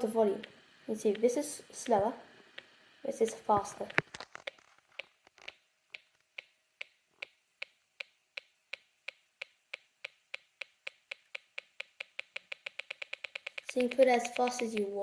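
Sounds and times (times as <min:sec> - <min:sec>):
drip-like electronic ticks: 0:06.4 - 0:15.0.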